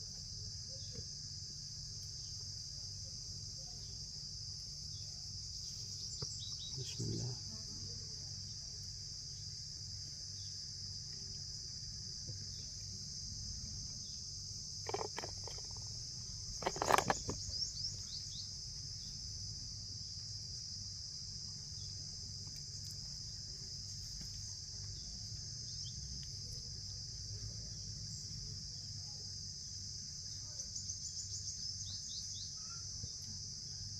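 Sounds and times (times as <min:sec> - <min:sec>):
insects chirring: 0:00.0 - 0:33.9
sharp scraping knocks: 0:14.8 - 0:15.9, 0:16.6 - 0:17.7.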